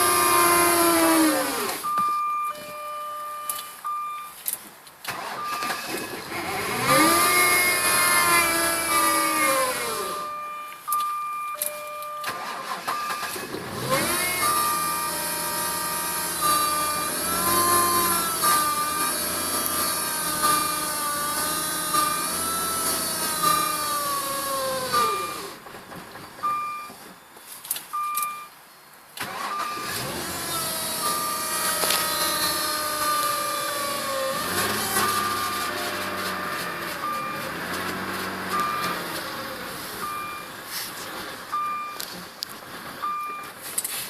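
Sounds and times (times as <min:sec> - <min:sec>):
car engine cold-starting: 0:00.0 - 0:02.0, 0:05.1 - 0:10.4, 0:12.2 - 0:27.2, 0:29.2 - 0:44.0
intermittent beeping tone: 0:01.8 - 0:04.4, 0:08.8 - 0:13.4, 0:26.4 - 0:28.8, 0:30.5 - 0:40.6, 0:41.5 - 0:42.1, 0:43.0 - 0:43.6.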